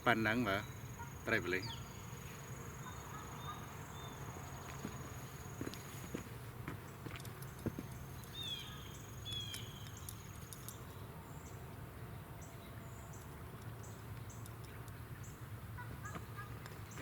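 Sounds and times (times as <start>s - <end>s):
insects trilling: 0.0s - 6.2s
bird chirps: 0.3s - 6.1s, 7.5s - 11.6s.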